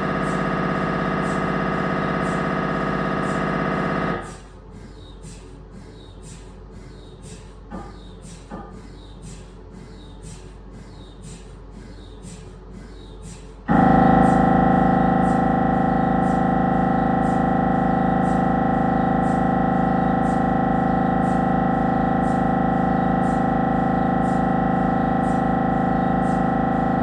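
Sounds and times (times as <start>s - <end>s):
mri scanner loud steady buzz: 0.0s - 5.1s, 12.8s - 27.0s.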